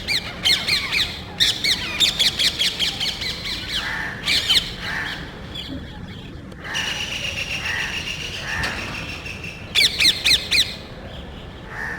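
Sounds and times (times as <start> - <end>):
parrots squawking: 0.0 - 5.3, 9.7 - 10.8.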